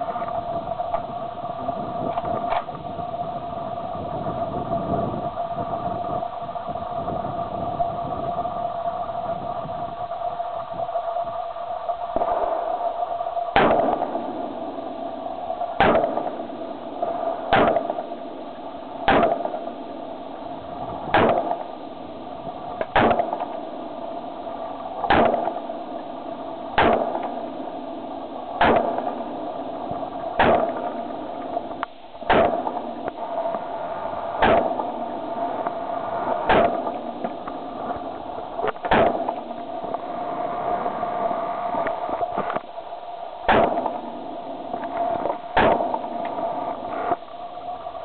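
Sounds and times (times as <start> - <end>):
steady hum: 0.0 - 48.0
rifle shots: 13.6 - 21.9, 22.8 - 33.7, 34.3 - 42.6, 43.5 - 47.2.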